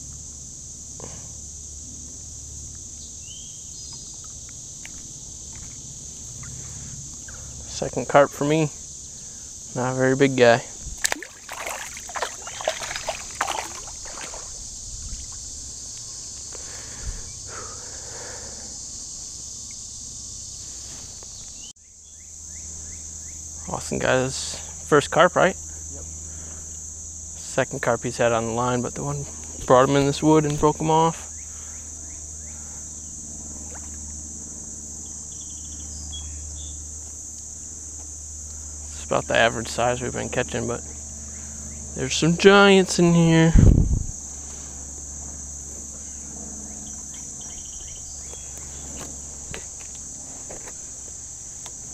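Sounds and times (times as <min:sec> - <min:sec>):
high insect drone: 0:00.0 - 0:51.9
water and wading noise: 0:11.0 - 0:15.8.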